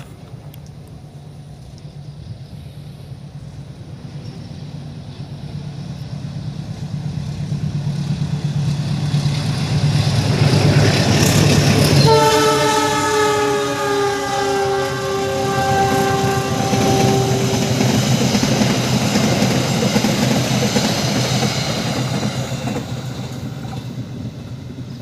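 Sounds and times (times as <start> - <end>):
diesel locomotive engine hum: 0.0 - 25.0
rail noise: 0.0 - 25.0
locomotive horn: 11.8 - 17.9.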